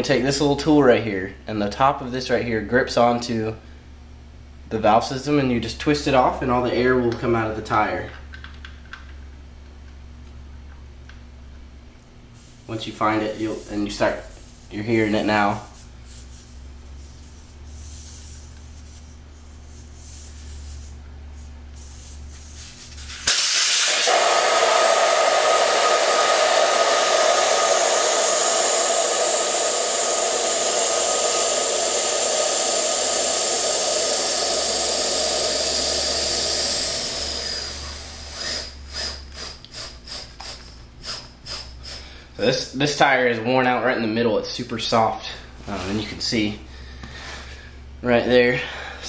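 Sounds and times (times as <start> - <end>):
air hissing out of a tire valve: 12.4 - 42.3.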